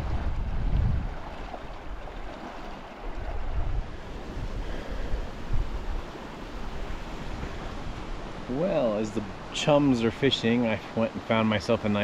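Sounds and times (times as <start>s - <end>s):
wind buffeting microphone: 0.0s - 9.5s
mountain stream rushing: 0.0s - 12.0s.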